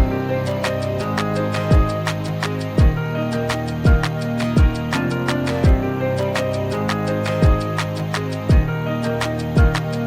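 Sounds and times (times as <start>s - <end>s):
deep kick drum: 1.7s - 2.0s, 2.8s - 3.0s, 3.9s - 4.9s, 5.6s - 5.9s, 7.4s - 7.7s, 8.5s - 8.8s, 9.6s - 9.8s.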